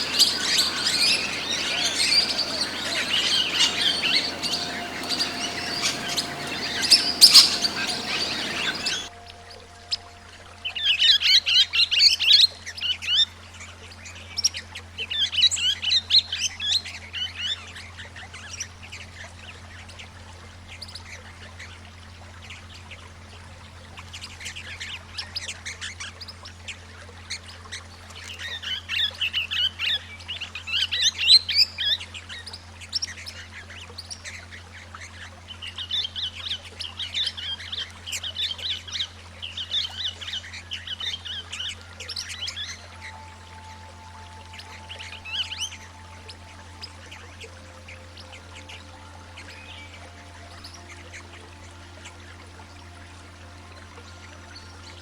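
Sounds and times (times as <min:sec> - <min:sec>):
parrots chattering: 0:00.0 - 0:09.1
low steady hum: 0:00.0 - 0:13.0, 0:34.6 - 0:55.0.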